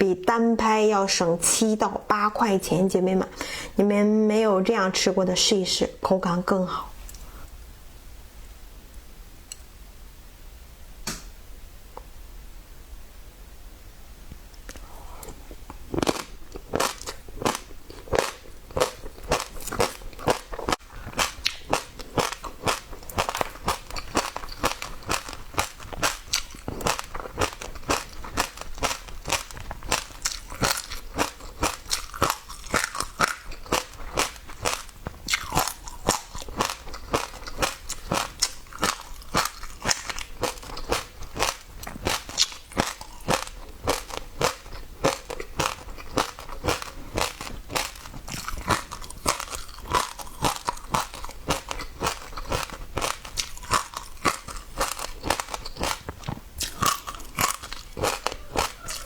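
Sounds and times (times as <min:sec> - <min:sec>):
fruit seeds crunching while chewed: 0:14.6 - 0:59.0.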